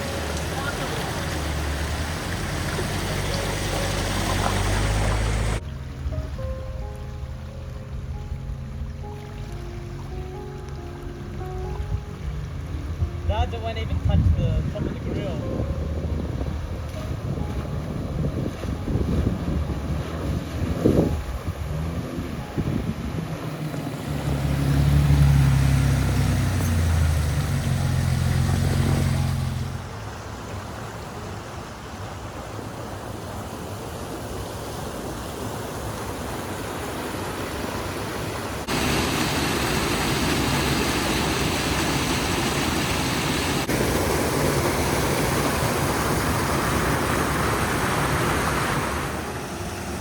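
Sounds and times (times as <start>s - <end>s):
vehicle engine running: 0.0s - 6.2s, 19.4s - 30.2s
tyre and wind rushing noise: 14.1s - 30.1s.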